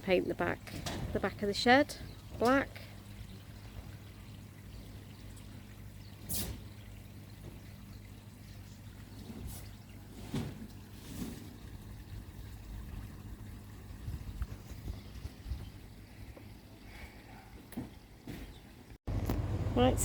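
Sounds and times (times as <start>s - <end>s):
water pouring into pond: 1.2s - 17.2s
low hum: 19.1s - 20.0s.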